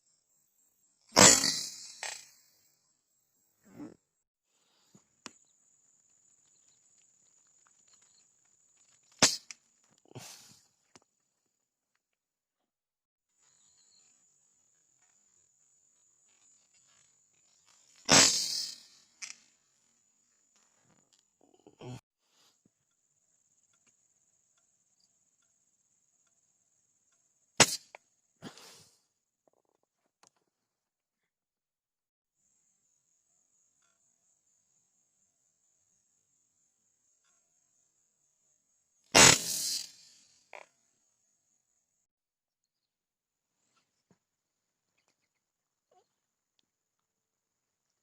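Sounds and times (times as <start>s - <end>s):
air rifle shot: 39.2s - 39.9s.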